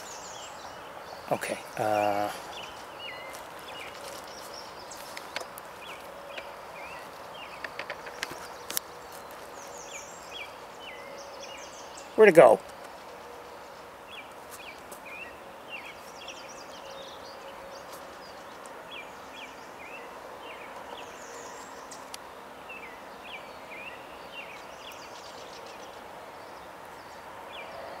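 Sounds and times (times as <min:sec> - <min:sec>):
outdoor hiss: 0:00.0 - 0:17.2
birds chirping: 0:00.0 - 0:28.0.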